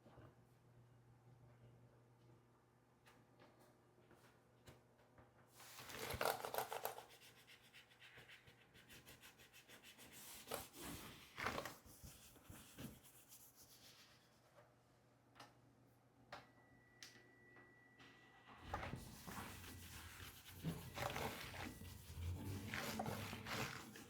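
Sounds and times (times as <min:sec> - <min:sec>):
rubbing on laptop keyboard: 0:05.6 - 0:14.5, 0:18.8 - 0:24.0.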